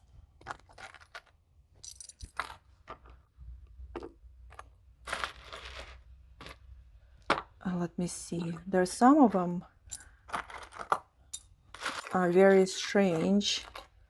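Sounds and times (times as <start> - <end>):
metal jewelry clinking: 1.8 - 2.5.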